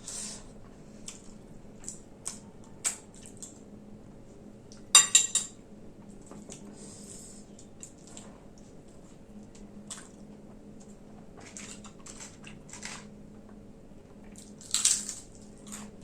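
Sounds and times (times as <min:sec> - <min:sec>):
metal dishes clinking: 0:05.0 - 0:05.6.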